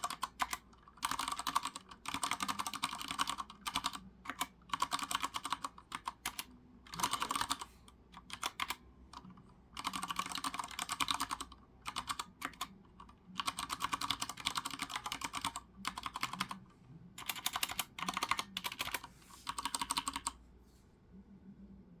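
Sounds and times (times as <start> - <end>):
mechanical keyboard typing: 0.0 - 16.6, 17.2 - 20.4.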